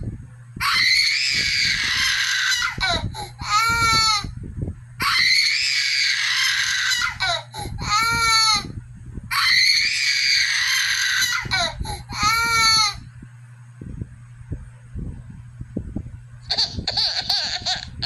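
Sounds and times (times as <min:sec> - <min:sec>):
low steady hum: 0:00.0 - 0:18.0
young child crying: 0:05.0 - 0:08.7, 0:09.3 - 0:13.0.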